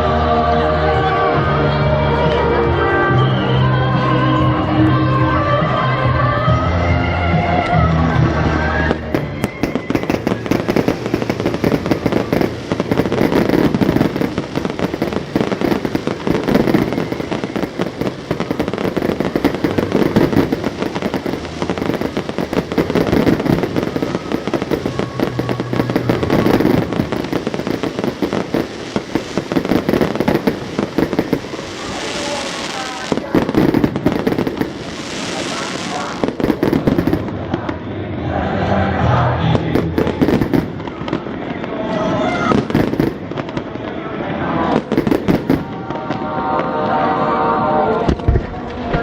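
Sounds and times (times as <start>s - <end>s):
music: 0.0s - 43.3s, 44.1s - 49.0s
fireworks bursting and crackling: 2.2s - 38.0s, 39.0s - 49.0s.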